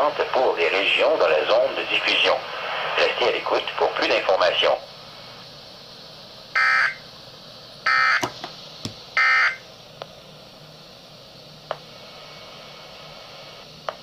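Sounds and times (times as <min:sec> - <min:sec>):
faint broadcast hiss: 0:00.0 - 0:07.8, 0:08.4 - 0:14.0
buzzy emergency alert data tones: 0:09.2 - 0:09.6.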